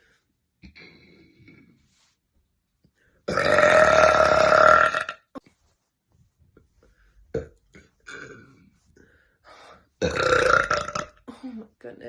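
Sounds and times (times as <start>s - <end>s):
woman burping: 3.3s - 5.4s, 7.4s - 8.6s, 10.0s - 11.6s.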